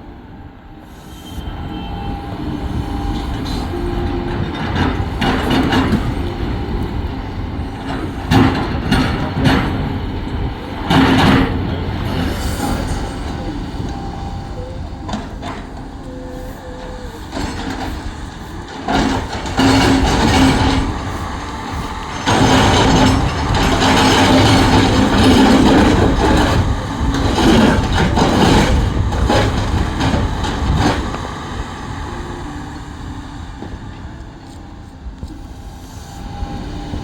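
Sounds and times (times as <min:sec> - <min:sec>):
diesel engine under load: 0:00.0 - 0:37.0
metallic clanking and rattling: 0:16.8 - 0:31.3.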